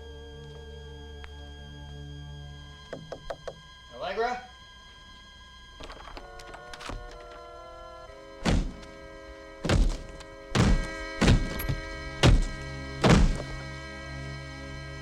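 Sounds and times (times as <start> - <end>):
slow film score: 0.0 - 15.0
heavy thuds: 8.4 - 13.7.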